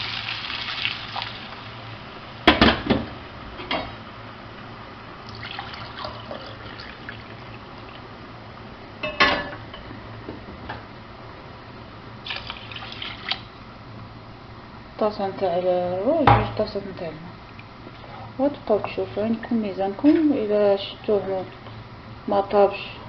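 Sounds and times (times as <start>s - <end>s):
broth pouring and simmering: 0.0s - 2.0s, 5.2s - 8.3s, 12.2s - 13.5s.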